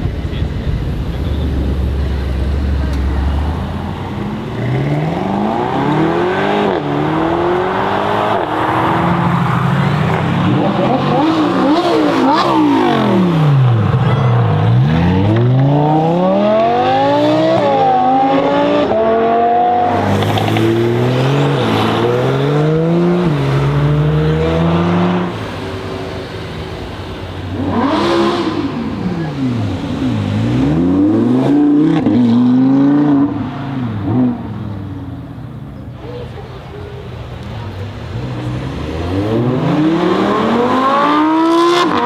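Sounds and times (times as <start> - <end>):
exhaust crack: 0.0 - 15.8
car engine revving: 0.0 - 42.0.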